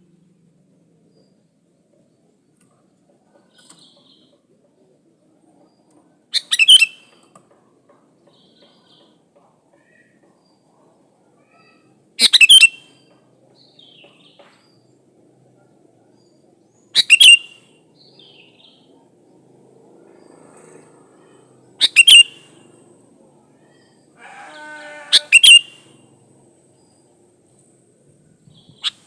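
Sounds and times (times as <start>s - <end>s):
soft bird chirps: 5.3s - 7.3s, 15.6s - 22.9s
bird calling sharp phrases: 6.3s - 7.2s, 11.3s - 14.4s, 16.2s - 19.0s, 21.2s - 22.9s, 23.5s - 27.3s, 28.3s - 29.0s.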